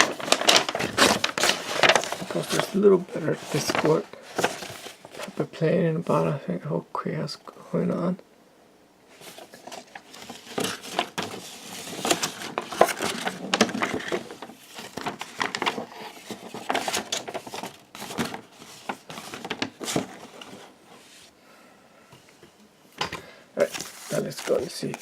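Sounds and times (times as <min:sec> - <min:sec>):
wrapper crinkling: 0:00.0 - 0:05.3, 0:09.2 - 0:20.6, 0:23.6 - 0:25.0
cards being handled: 0:00.0 - 0:05.4, 0:09.2 - 0:20.6, 0:23.1 - 0:25.0.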